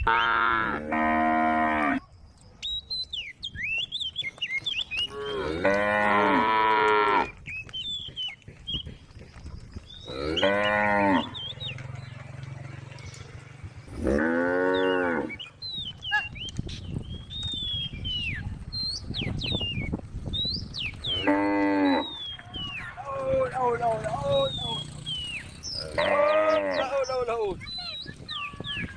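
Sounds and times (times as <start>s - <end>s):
cows mooing: 0.0s - 2.0s, 5.0s - 7.4s, 10.0s - 15.5s, 21.0s - 22.2s, 23.5s - 27.2s.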